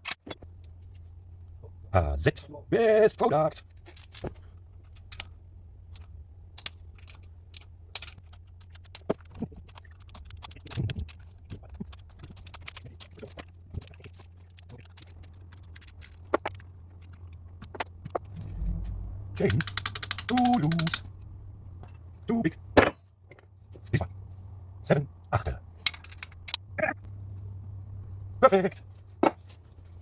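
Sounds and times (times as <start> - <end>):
steady low hum: 0.4 - 30.0
hand tools clinking on metal: 19.5 - 21.1.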